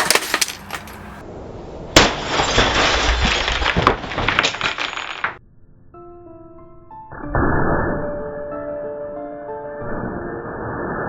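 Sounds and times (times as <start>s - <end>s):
glass breaking and clinking: 0.0s - 1.1s, 2.0s - 5.4s.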